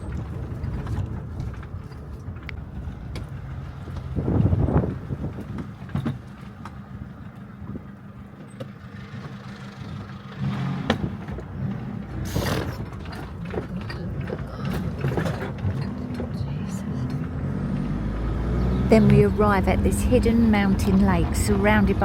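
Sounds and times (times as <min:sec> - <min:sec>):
knocks and rattles of van: 0:00.0 - 0:18.0
van engine running: 0:00.0 - 0:22.0
sharp clatter: 0:08.6 - 0:17.3.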